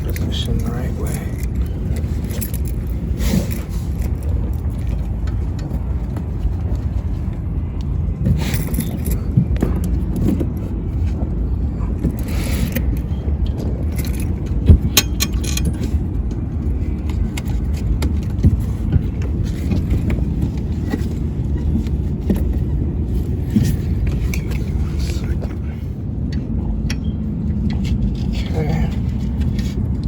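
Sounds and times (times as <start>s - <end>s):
steady low rumble: 0.0s - 30.0s
metallic clicks and rattles: 12.2s - 16.4s.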